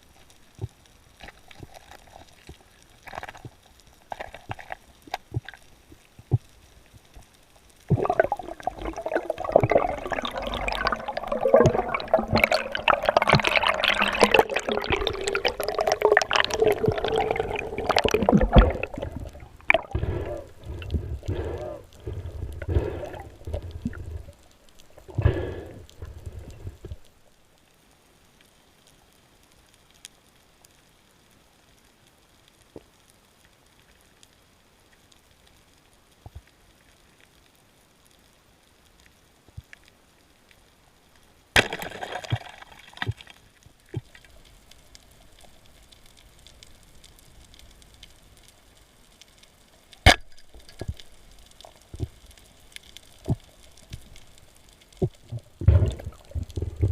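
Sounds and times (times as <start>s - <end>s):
water sloshing and splashing: 7.9s - 27.1s, 41.6s - 44.4s, 54.9s - 56.9s.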